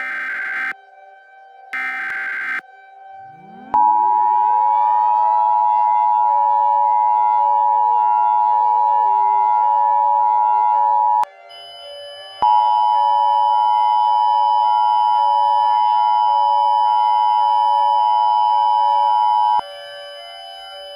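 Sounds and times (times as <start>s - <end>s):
two-tone alert beep: 0.0s - 0.7s
siren wail rising in pitch: 0.0s - 0.8s, 1.8s - 2.6s.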